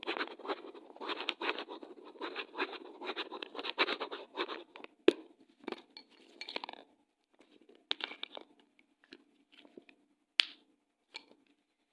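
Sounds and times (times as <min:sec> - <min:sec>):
pen writing on paper: 0:00.0 - 0:04.8.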